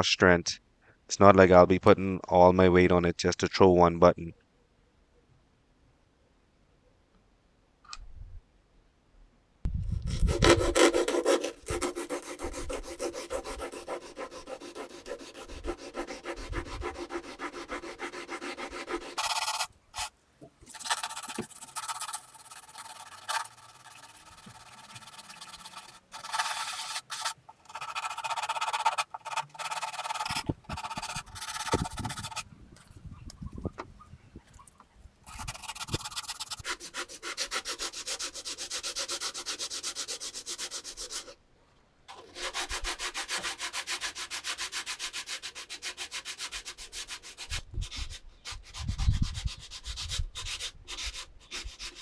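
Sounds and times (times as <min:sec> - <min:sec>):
sanding fiberglass: 0:10.4 - 0:20.1, 0:20.7 - 0:32.4, 0:35.3 - 0:41.3.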